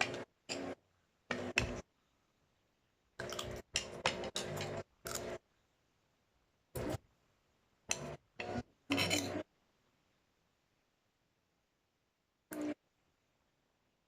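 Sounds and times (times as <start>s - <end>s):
cutlery clinking: 7.9s - 9.4s.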